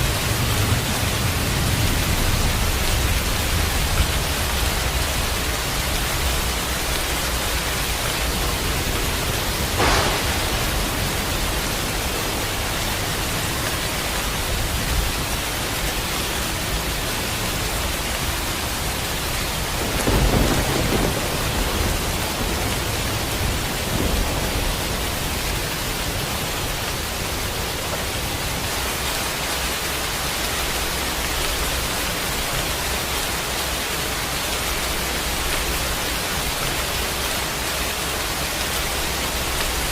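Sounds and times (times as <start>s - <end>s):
steady rain falling: 0.0s - 39.9s
thunder: 6.2s - 15.4s, 19.5s - 26.8s
sharp crack: 9.6s - 13.2s.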